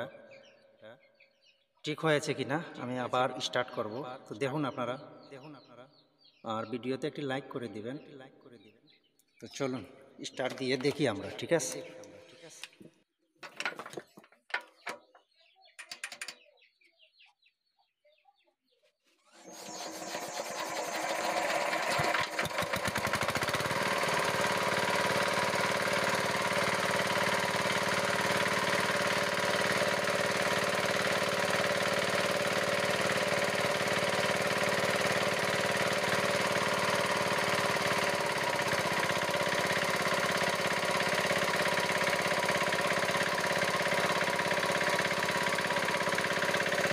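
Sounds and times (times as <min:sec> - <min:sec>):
diesel engine starting and running: 0:19.3 - 0:46.9.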